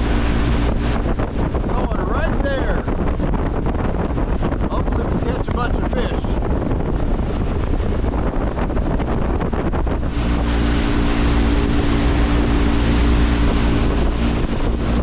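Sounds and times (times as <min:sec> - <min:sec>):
motorboat engine hum: 0:00.0 - 0:15.0
wind buffeting microphone: 0:00.0 - 0:15.0
water rushing: 0:10.2 - 0:14.6.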